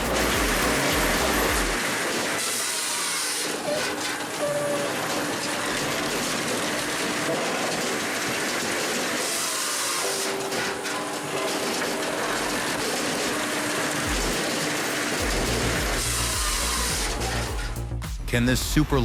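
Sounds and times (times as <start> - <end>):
firewood processor rattling: 3.2 - 17.4.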